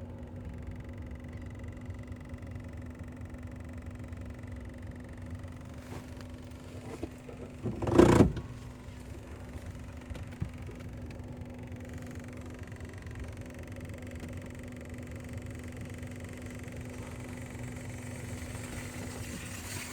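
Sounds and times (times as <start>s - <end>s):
car engine humming: 5.4s - 19.9s.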